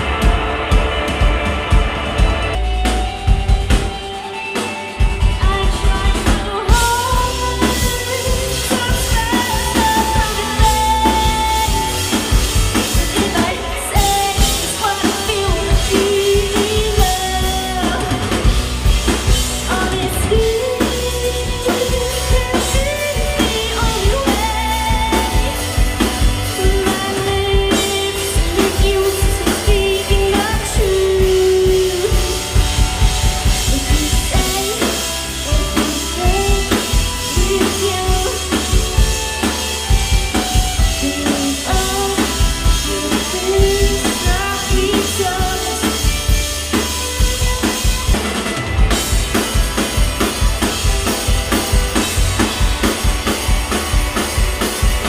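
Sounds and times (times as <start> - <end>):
indie rock band playing live: 0.0 - 55.0
person singing: 5.0 - 18.5, 19.6 - 32.7, 33.5 - 39.2, 40.8 - 46.4.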